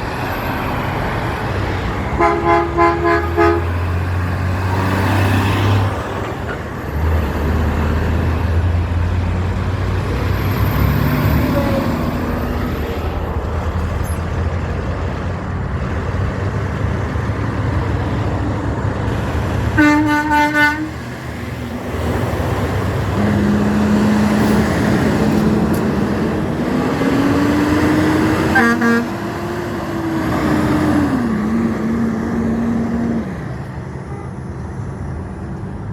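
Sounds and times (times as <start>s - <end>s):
trucks diesel engine rumble: 0.0s - 35.9s
truck air horn: 2.1s - 4.1s, 11.4s - 12.3s, 19.7s - 21.1s, 23.1s - 24.8s, 28.3s - 29.3s, 34.0s - 34.4s.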